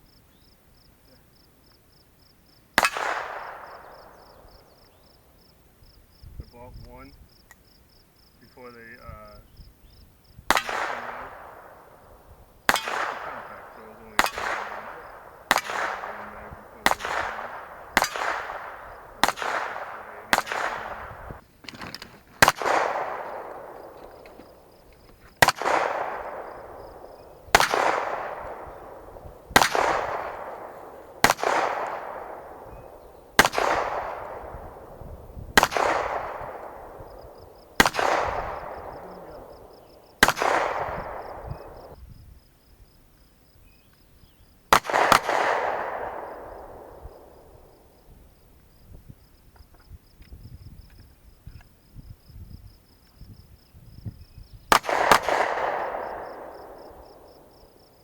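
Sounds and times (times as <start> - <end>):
gunshots with echo: 2.8 - 5.2, 10.4 - 42.0, 44.7 - 48.2, 54.6 - 58.0.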